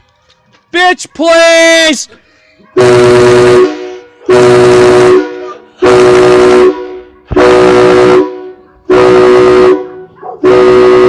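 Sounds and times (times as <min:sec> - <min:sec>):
train horn blasts: 0:02.8 - 0:11.0.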